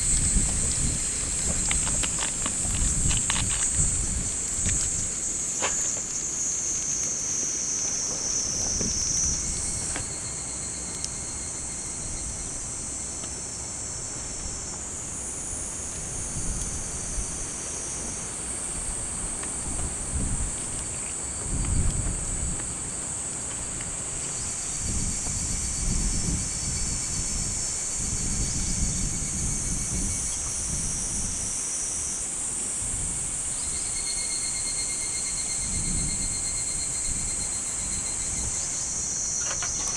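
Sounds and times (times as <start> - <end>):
wind gusts on microphone: 0.0 - 10.1, 16.0 - 23.0, 23.7 - 31.6
insects singing high-pitched chorus: 0.0 - 39.9.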